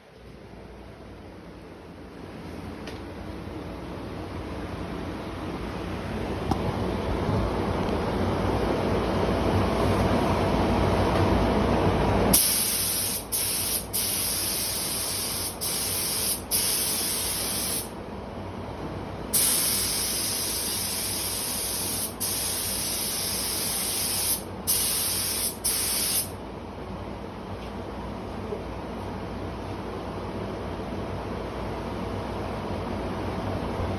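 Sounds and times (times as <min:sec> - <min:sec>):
paint spray gun hissing: 0:12.4 - 0:17.9, 0:19.4 - 0:26.3.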